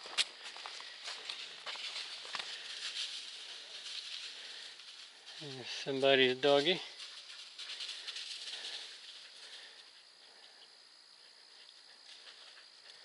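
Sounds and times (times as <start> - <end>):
footsteps in dry leaves: 0.0 - 9.8.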